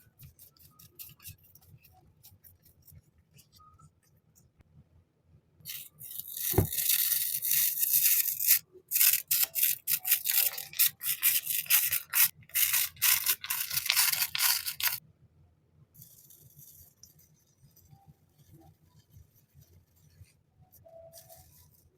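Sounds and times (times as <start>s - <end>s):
packaging rustling: 11.9s - 15.0s.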